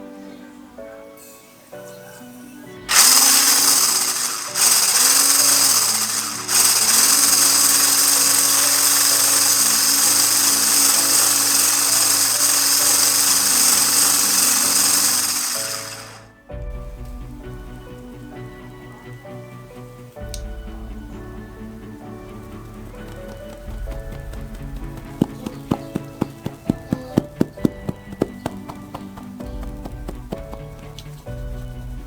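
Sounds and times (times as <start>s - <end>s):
soft background music: 0.0s - 32.0s
electric appliance motor running: 2.9s - 16.4s, 23.0s - 31.0s.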